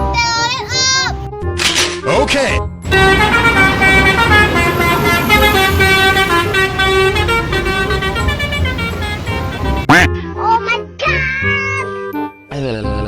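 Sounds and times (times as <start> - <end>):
bus horn playing a tune: 2.9 - 9.9.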